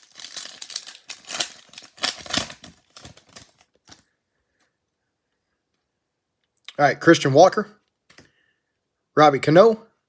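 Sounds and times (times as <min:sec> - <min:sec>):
cards and wrapper rustling: 0:00.0 - 0:04.1.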